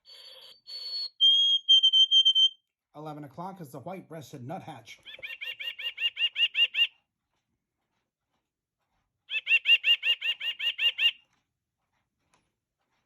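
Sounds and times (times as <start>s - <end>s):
bird clock song: 0.0s - 2.5s, 5.0s - 7.0s, 9.3s - 11.3s.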